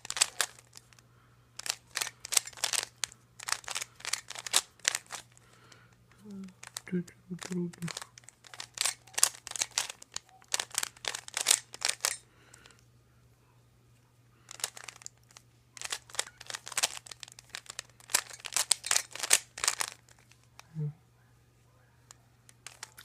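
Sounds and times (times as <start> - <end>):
puzzle cube clacking: 0.0 - 1.0, 1.6 - 5.4, 6.1 - 12.2, 14.5 - 20.7, 22.1 - 23.0.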